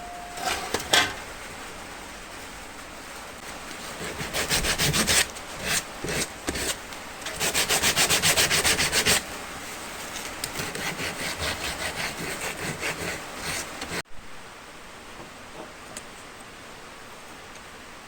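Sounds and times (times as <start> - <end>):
hand tool rubbing on wood: 3.8 - 9.2, 10.5 - 14.0.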